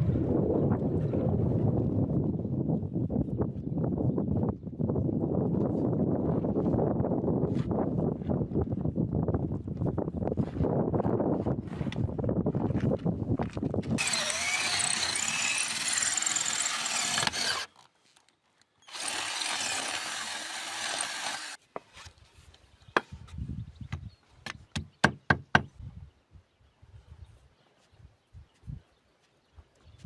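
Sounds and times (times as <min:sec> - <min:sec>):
power tool running on wood: 0:14.0 - 0:17.7, 0:18.9 - 0:21.6.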